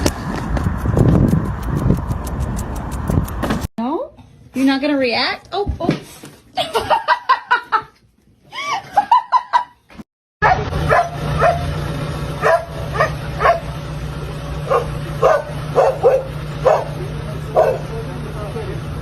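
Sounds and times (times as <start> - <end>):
dog yipping: 10.4 - 11.7, 12.4 - 13.6, 14.7 - 16.9, 17.6 - 17.9.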